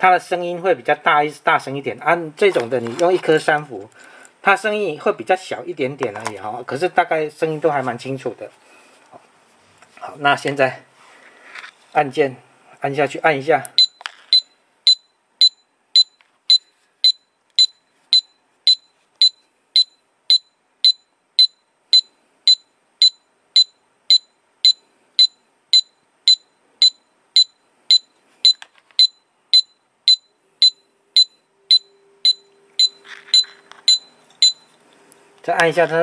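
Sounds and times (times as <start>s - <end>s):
short high-pitched beeps: 13.8s - 34.8s.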